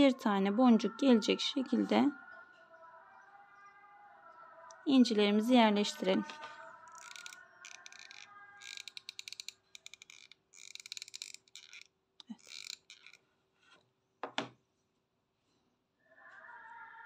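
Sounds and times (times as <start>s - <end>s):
rapid ratchet-like clicks: 6.9s - 13.2s.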